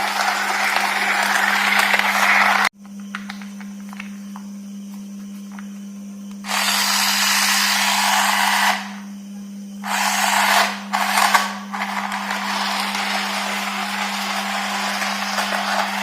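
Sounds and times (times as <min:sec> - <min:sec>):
toy train motor whirring: 0:00.0 - 0:02.7, 0:06.4 - 0:08.9, 0:09.8 - 0:16.0
steady low hum: 0:00.1 - 0:16.0.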